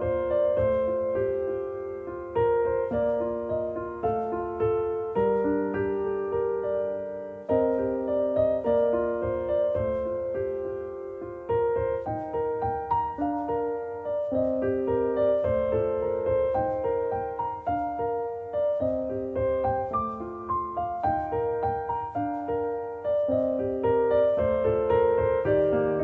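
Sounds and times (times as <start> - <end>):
gentle piano music: 0.0 - 26.0.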